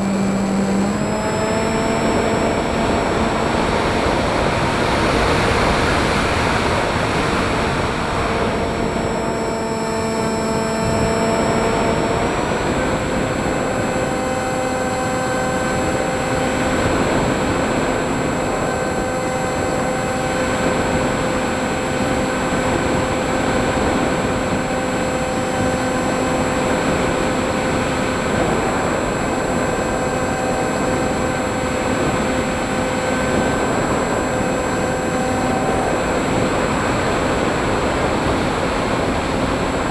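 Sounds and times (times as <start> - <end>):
model aircraft motor whine: 0.0 - 39.9
rushing wind: 0.0 - 39.9.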